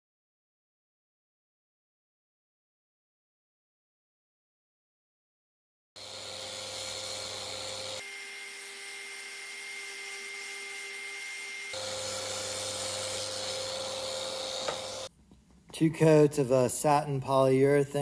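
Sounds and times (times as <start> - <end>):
power tool motor whine: 6.0 - 15.1.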